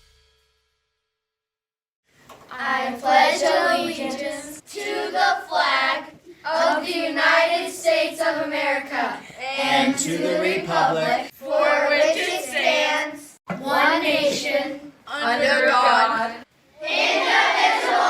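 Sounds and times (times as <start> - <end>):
children singing: 2.5 - 18.0.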